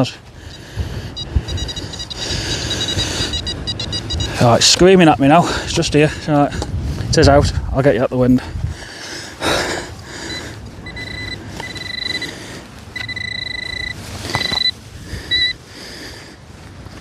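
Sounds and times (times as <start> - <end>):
wind noise: 0.4 - 15.6
metal detector beeps: 0.5 - 4.8, 10.3 - 12.3, 12.9 - 15.6.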